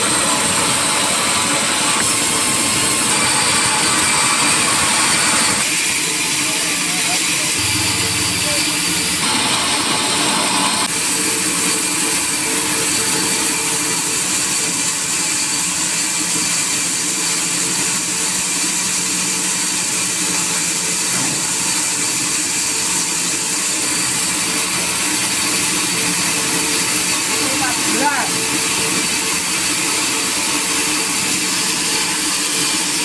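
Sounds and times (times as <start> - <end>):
sawmill machinery running: 0.0 - 33.0
steady hum tones: 7.6 - 10.9.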